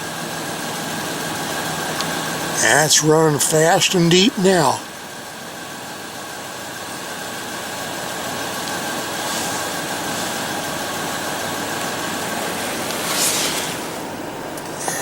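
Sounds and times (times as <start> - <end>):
truck engine running: 0.0 - 15.0
steady rushing hiss: 8.9 - 15.0.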